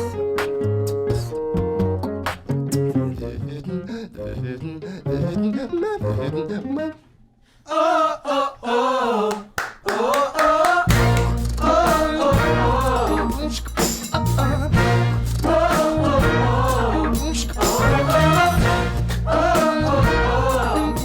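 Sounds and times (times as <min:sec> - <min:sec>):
beatboxing: 0:10.2 - 0:20.2
deep bass: 0:10.9 - 0:21.0
sliding melody line: 0:10.9 - 0:21.0.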